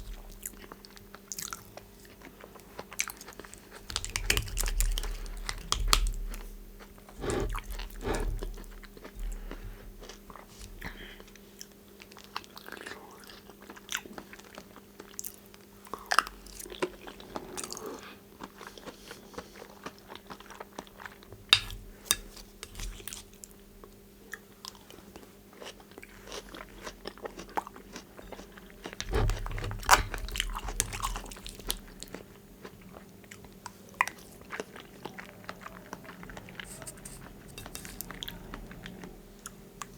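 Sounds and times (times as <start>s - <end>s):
person chewing: 0.0s - 14.6s, 24.4s - 39.9s
faint steady hum: 0.0s - 39.9s.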